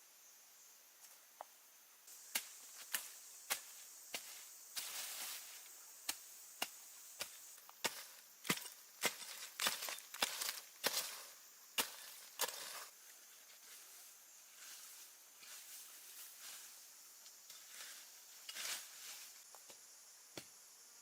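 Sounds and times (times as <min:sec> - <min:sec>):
blade chopping wood: 0:06.1 - 0:11.2, 0:11.8 - 0:12.8.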